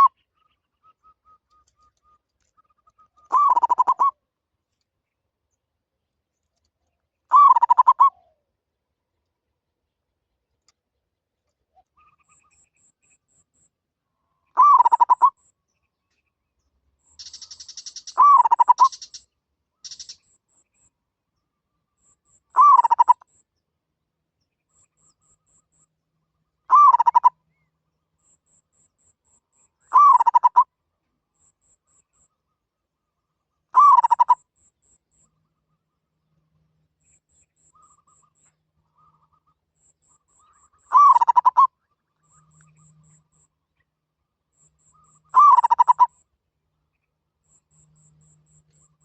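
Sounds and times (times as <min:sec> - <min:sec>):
dove cooing: 0:03.3 - 0:04.1, 0:07.3 - 0:08.4, 0:14.6 - 0:15.3, 0:18.2 - 0:19.0, 0:22.6 - 0:23.2, 0:26.7 - 0:27.3, 0:29.9 - 0:30.6, 0:33.8 - 0:34.4, 0:40.9 - 0:41.7, 0:45.3 - 0:46.1
high scratchy bird chatter: 0:17.1 - 0:20.4.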